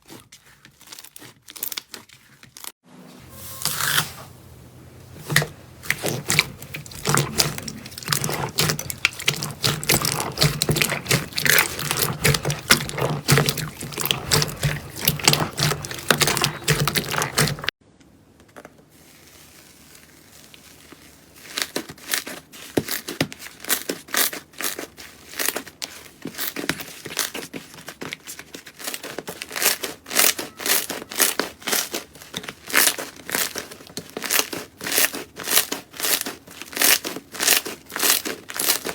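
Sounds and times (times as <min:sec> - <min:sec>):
slime crackling and popping: 0:05.8 - 0:17.7, 0:28.8 - 0:38.9.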